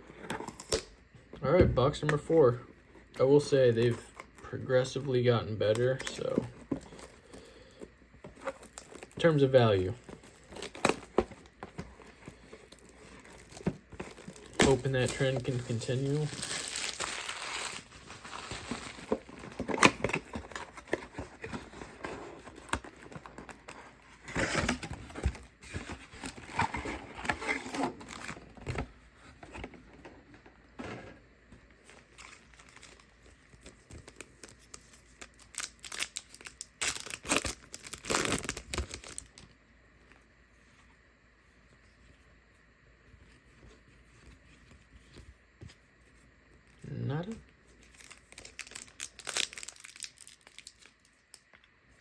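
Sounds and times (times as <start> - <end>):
plastic packaging crinkling and tearing: 8.4 - 28.7, 31.8 - 39.4, 46.9 - 51.5.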